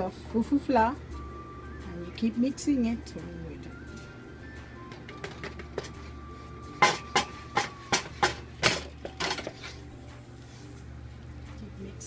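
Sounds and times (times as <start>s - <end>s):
spoon scraping a cooking pot: 9.2s - 9.9s.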